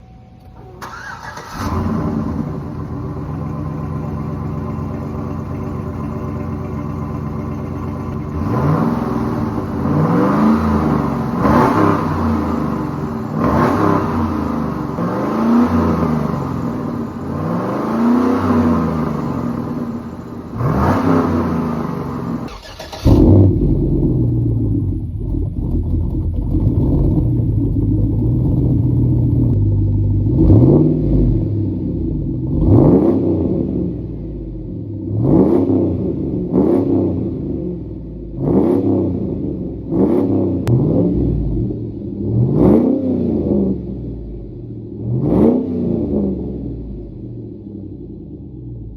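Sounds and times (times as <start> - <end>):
car engine idling: 0.0 - 32.8
car engine revving in blips: 0.4 - 48.9.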